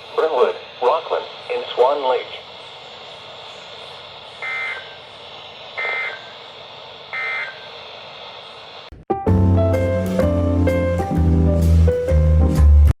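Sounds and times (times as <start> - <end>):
radio hiss: 0.0 - 8.9
digital data tone bursts: 1.2 - 8.7.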